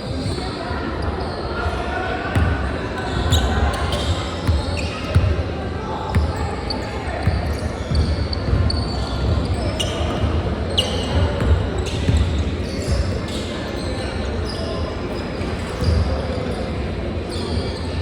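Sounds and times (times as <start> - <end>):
sneaker squeaks: 0.0 - 5.4, 6.1 - 18.0
murmur of voices: 0.0 - 18.0
basketball bouncing on court: 2.3 - 5.4, 7.2 - 13.2.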